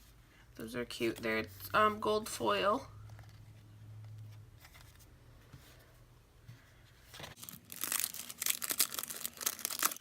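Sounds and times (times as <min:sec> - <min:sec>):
crinkly packaging crackling: 0:07.2 - 0:10.0.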